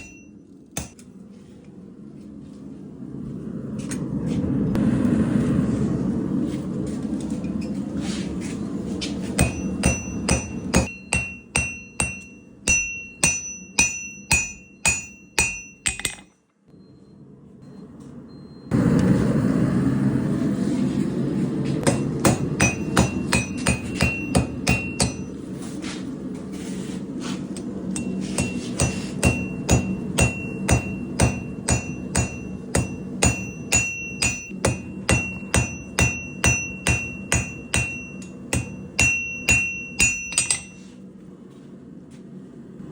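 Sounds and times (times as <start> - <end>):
hammer ringing on anvil: 0.0 - 1.0, 9.4 - 16.3, 21.8 - 25.4, 27.9 - 40.9.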